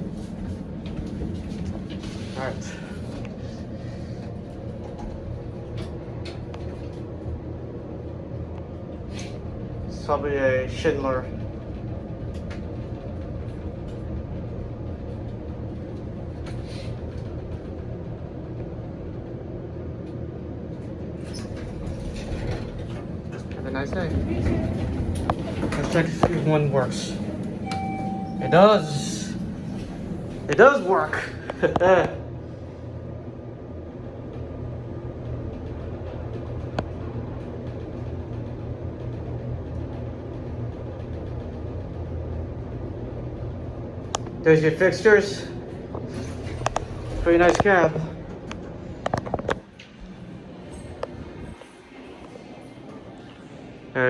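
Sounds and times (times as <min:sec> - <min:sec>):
elevator rumble: 0:00.0 - 0:54.0.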